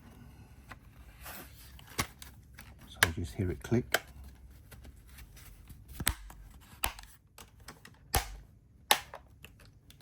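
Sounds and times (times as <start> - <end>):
plastic cover snapping onto clips: 6.0 - 10.0.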